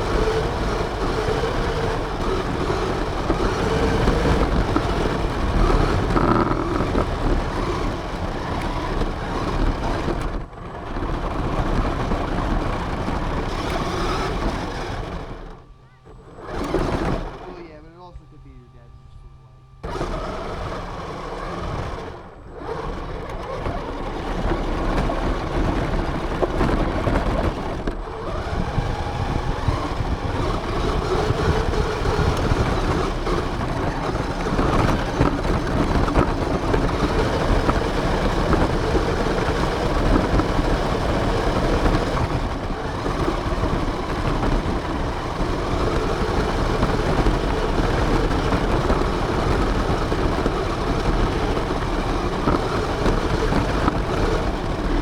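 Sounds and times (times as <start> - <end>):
radio-controlled car motor: 0.0 - 17.8, 18.4 - 55.0
rushing wind: 19.8 - 55.0.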